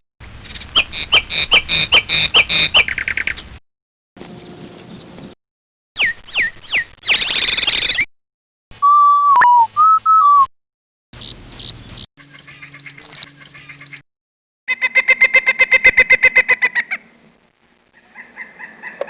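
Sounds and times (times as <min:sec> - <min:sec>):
falling whistled bird notes: 0:08.8 - 0:10.5
fast bird trill: 0:11.2 - 0:14.0
rapid high-pitched chirping: 0:11.2 - 0:14.0.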